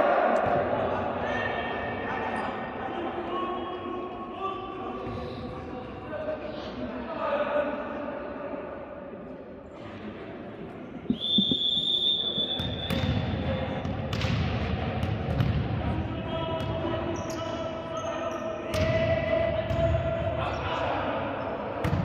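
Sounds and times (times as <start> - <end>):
high whistle blowing: 11.1 - 12.9.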